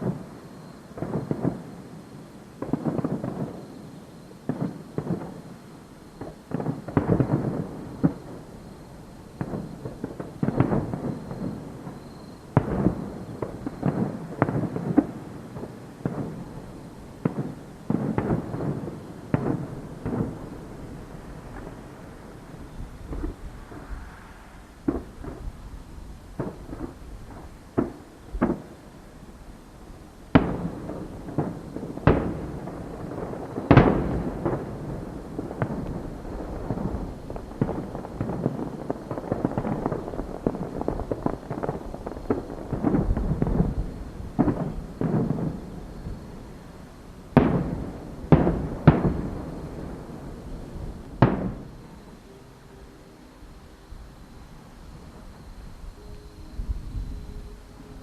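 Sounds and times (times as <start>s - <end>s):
fireworks booming: 0.0s - 29.1s, 30.3s - 52.5s.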